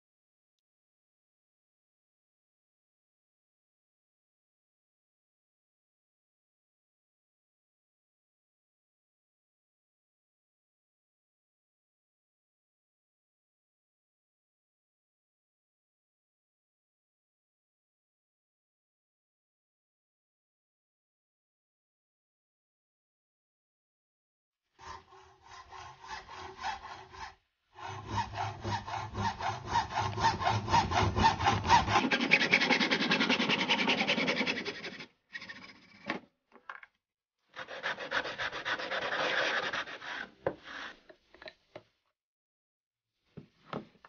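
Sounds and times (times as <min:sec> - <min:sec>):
hand tool scraping material: 0:24.8 - 0:36.2, 0:37.6 - 0:41.2.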